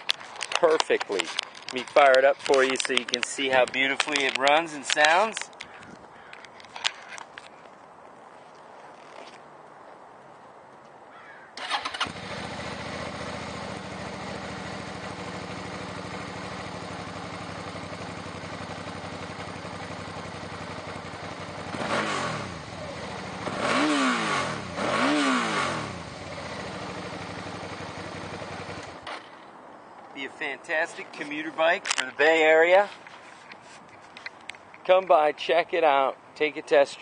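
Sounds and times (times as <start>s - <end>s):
motorcycle engine revving: 11.6s - 29.1s
motorcycle engine starting and idling: 11.6s - 29.4s.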